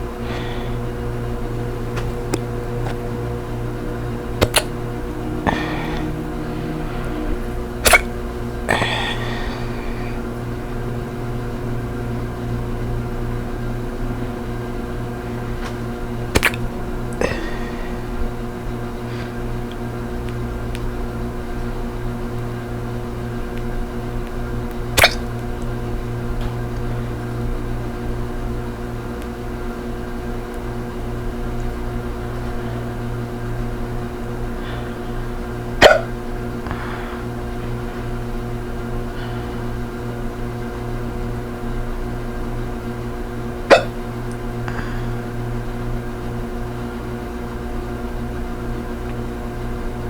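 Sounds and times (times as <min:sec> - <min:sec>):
steady low hum: 0:00.0 - 0:50.0
woman hiccuping: 0:04.4 - 0:04.8, 0:05.4 - 0:06.3, 0:07.8 - 0:08.1, 0:16.4 - 0:16.6, 0:17.2 - 0:18.0, 0:25.0 - 0:25.3, 0:35.8 - 0:36.1, 0:43.7 - 0:43.9.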